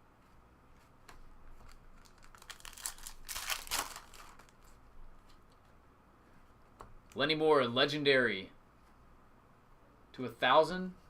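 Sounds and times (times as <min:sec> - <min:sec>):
trading cards being handled: 0:00.8 - 0:05.7
packaging crinkling and rustling: 0:01.6 - 0:04.8.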